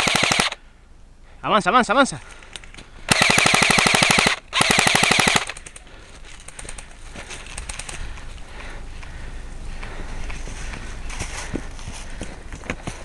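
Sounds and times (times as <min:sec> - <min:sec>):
airsoft rifle firing full auto: 0:00.0 - 0:00.6, 0:03.1 - 0:05.8.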